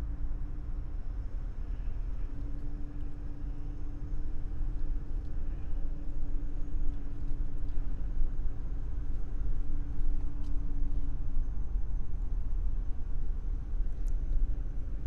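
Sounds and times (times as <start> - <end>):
engine and tyre rumble: 0.0 - 15.0.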